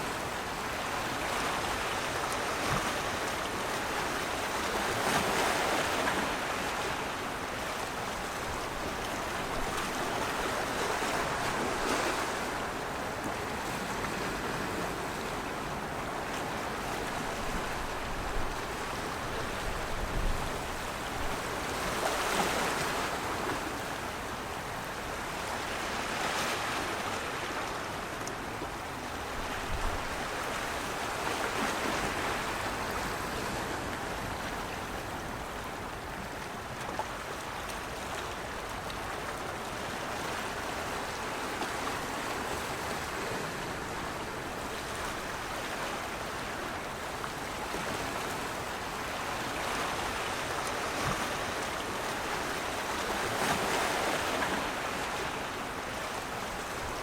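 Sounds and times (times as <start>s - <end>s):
rushing water: 0.0s - 57.0s.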